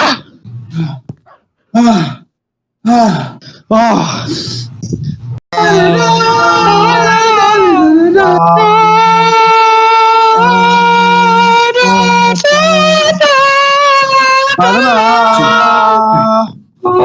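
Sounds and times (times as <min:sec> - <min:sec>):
singing of long held notes: 0:05.6 - 0:17.0.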